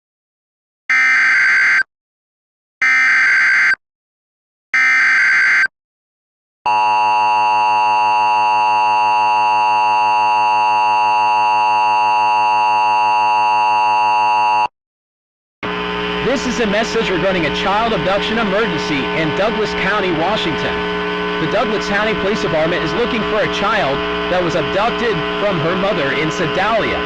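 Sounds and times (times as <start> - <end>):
digital header bursts: 15.6 - 27.0.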